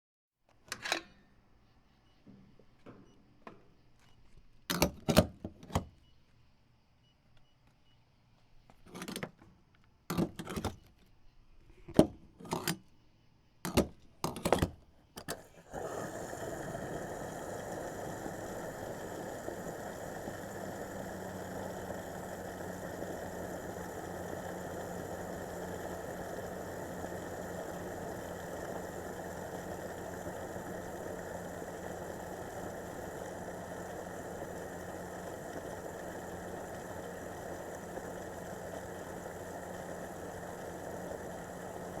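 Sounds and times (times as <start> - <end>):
pump nozzle clicks and clunks: 11.9 - 12.8
fuel pump whirring: 15.2 - 42.0.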